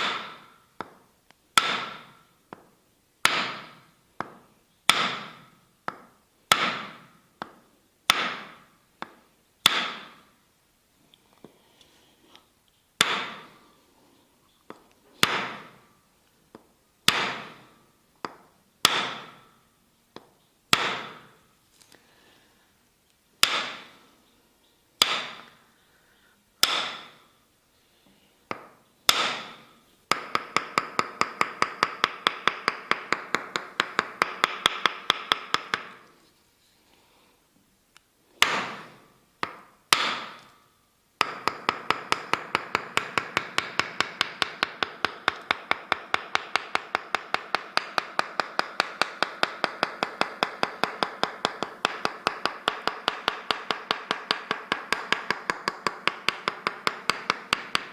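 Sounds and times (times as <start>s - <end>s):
wooden mallet striking wooden wedge: 0.0s - 1.0s, 1.6s - 10.2s, 13.0s - 13.6s, 14.7s - 15.8s, 16.5s - 19.6s, 20.2s - 21.4s, 23.4s - 24.0s, 25.0s - 25.6s, 26.6s - 27.3s, 28.5s - 36.1s, 38.4s - 40.5s, 41.2s - 57.9s.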